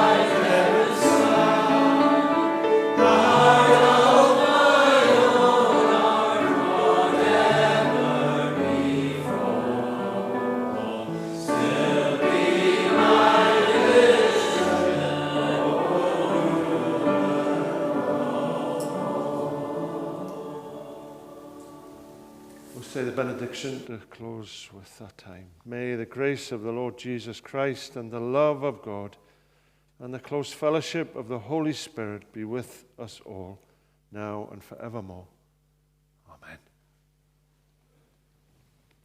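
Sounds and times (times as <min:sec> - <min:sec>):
congregation singing a hymn: 0:00.0 - 0:23.9.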